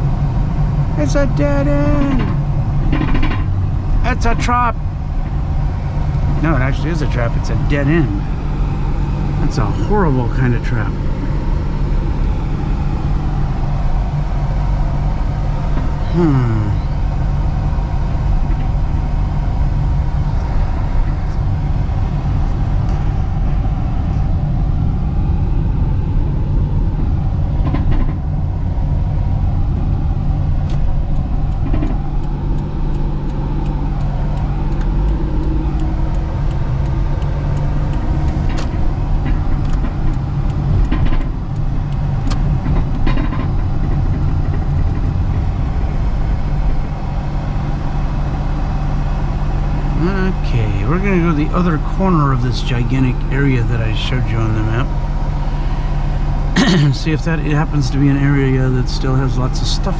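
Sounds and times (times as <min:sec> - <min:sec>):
road noise: 0:00.0 - 0:59.9
vehicle engine drone: 0:00.0 - 0:59.9
clicks and rattles: 0:02.0 - 0:03.5, 0:42.2 - 0:45.1.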